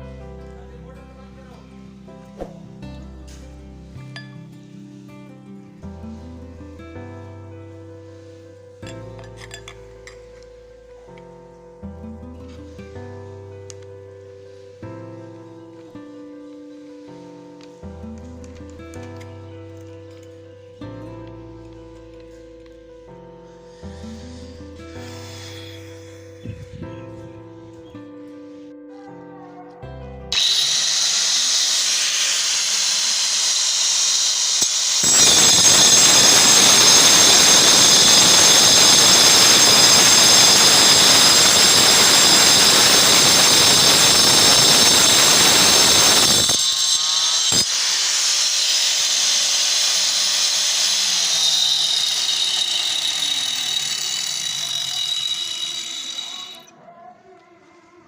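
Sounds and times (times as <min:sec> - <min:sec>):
angle grinder whining: 0:30.3 - 0:56.7
grinder cutting harshly: 0:30.3 - 0:56.7
grinder click: 0:30.4 - 0:56.7.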